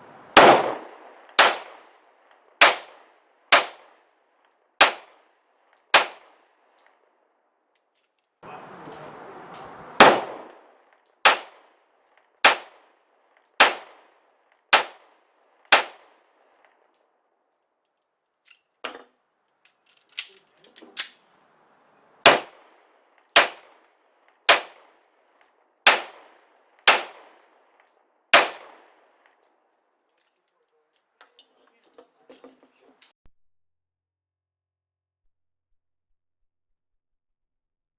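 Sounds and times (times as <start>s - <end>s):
pistol shots: 0.4s - 4.0s, 4.8s - 5.3s, 5.9s - 6.5s, 10.0s - 11.8s, 12.4s - 13.0s, 13.6s - 16.3s, 22.2s - 25.0s, 25.8s - 27.7s, 28.3s - 29.3s.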